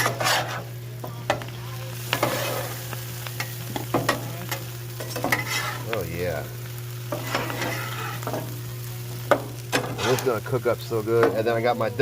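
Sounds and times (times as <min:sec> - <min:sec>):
spatula scraping on steel: 0:00.0 - 0:00.7, 0:02.1 - 0:02.8, 0:05.0 - 0:05.9, 0:07.1 - 0:08.5, 0:09.7 - 0:10.4
food frying on a griddle: 0:00.0 - 0:12.0.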